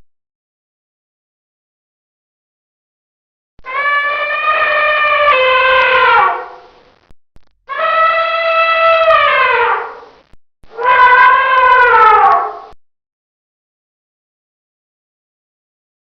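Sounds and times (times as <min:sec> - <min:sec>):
elephant trumpeting: 0:03.6 - 0:06.7, 0:07.7 - 0:10.1, 0:10.7 - 0:12.8.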